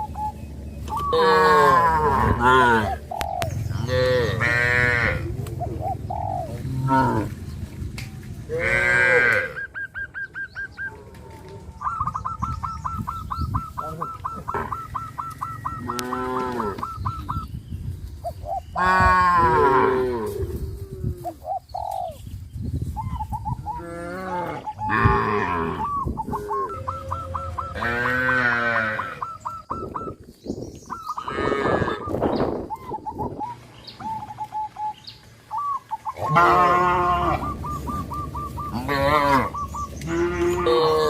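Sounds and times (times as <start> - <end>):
cattle mooing: 1.1 - 3.0, 3.8 - 5.3, 8.5 - 9.6, 15.8 - 16.8, 23.8 - 25.8, 26.6 - 29.3, 36.2 - 37.6, 38.7 - 41.0.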